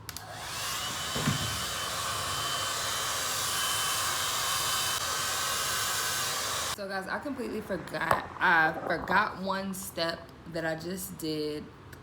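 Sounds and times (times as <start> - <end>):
blow dryer blowing: 0.0 - 6.8.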